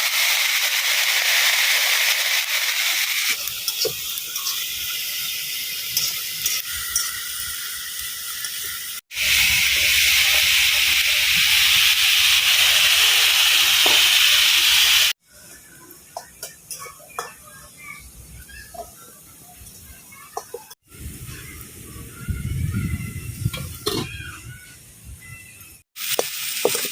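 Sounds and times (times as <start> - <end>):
food sizzling in a pan: 0.0 - 22.2, 26.0 - 26.9.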